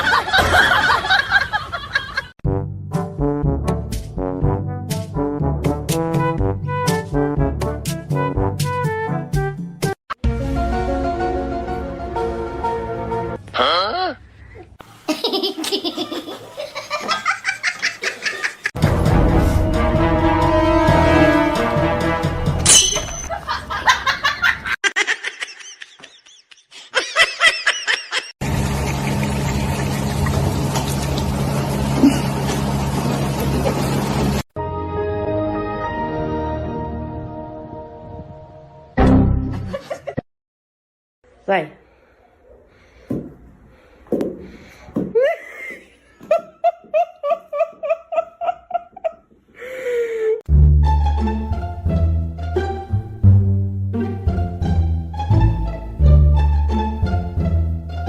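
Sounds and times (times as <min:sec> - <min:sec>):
person laughing: 0:13.6 - 0:18.7, 0:23.3 - 0:28.3, 0:32.0 - 0:32.5, 0:45.1 - 0:50.4
high-pitched squeaks: 0:22.7 - 0:23.3.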